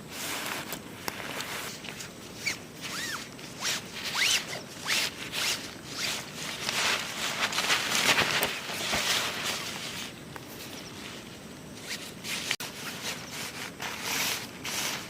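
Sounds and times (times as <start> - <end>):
zipper being pulled: 2.4 - 7.1.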